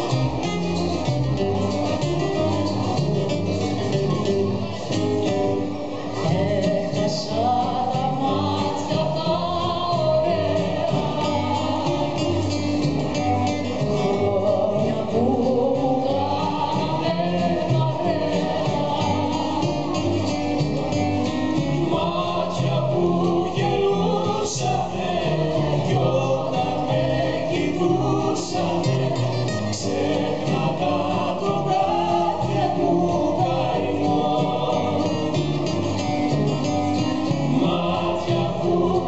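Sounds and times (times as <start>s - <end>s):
guitar accompaniment: 0.0s - 39.0s
several voices singing: 6.0s - 39.0s.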